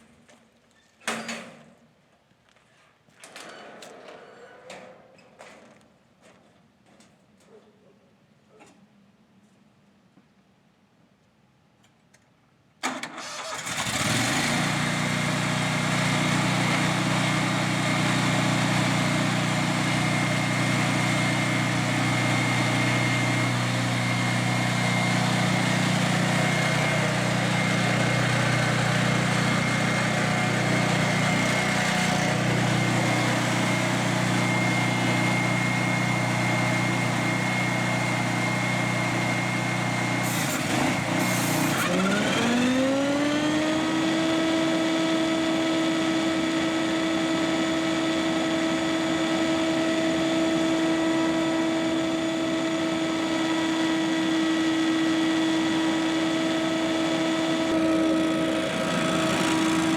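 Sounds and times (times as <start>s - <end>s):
leaf blower engine running: 13.1s - 59.9s.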